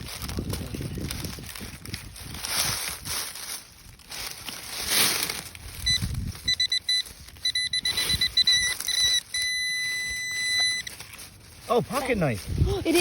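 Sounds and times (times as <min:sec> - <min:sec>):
scraping of digging in soil: 0:00.0 - 0:06.3
metal detector beeps: 0:05.8 - 0:11.0.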